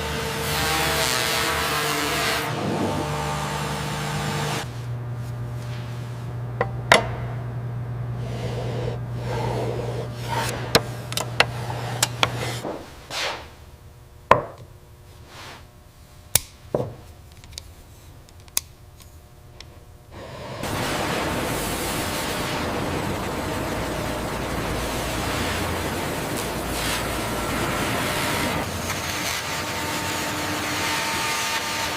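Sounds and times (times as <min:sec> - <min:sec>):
machine hum: 0:00.0 - 0:16.5, 0:18.9 - 0:31.9
rubbing and scraping: 0:08.2 - 0:13.6
wood and tools knocking: 0:16.7 - 0:17.0.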